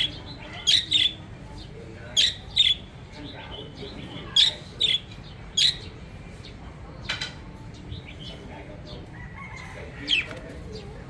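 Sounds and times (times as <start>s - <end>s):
budgerigars chattering: 0.0s - 6.6s
budgerigar chirps: 2.2s - 2.9s.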